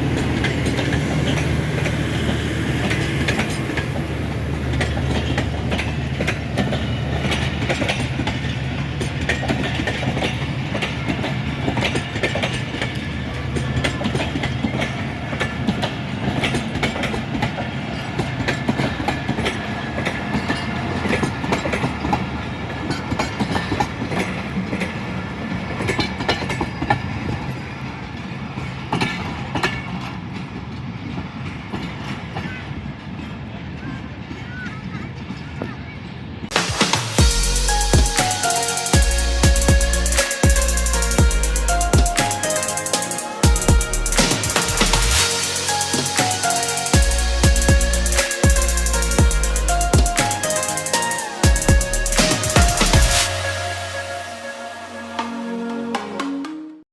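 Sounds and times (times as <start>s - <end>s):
diesel locomotive hum: 0.0s - 23.7s, 39.0s - 56.2s
train wheels clicking over rail joints: 0.0s - 35.7s.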